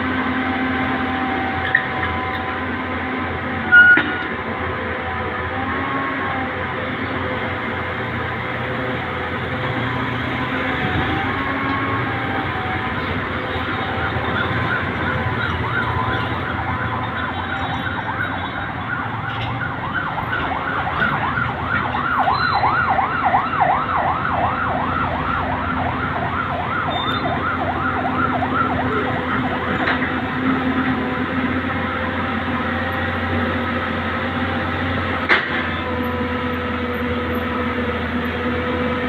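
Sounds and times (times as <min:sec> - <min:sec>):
engine running: 0:00.0 - 0:39.0
electronic siren sweeping: 0:09.6 - 0:30.4.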